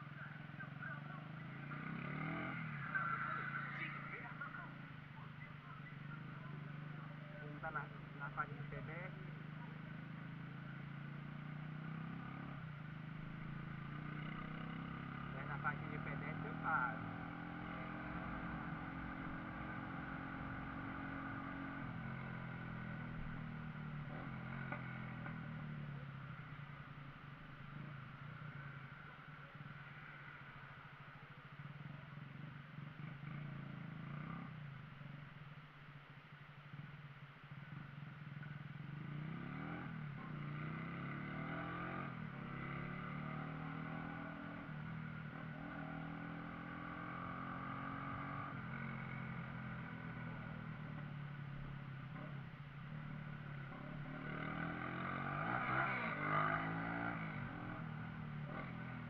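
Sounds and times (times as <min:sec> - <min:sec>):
motorcycle engine revving: 0:00.0 - 0:59.0.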